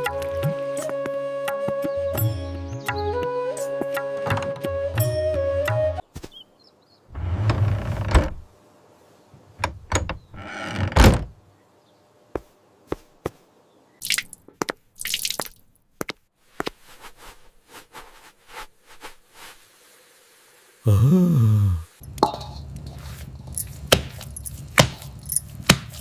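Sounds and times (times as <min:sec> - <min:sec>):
water pouring splashes: 0:14.0 - 0:15.7.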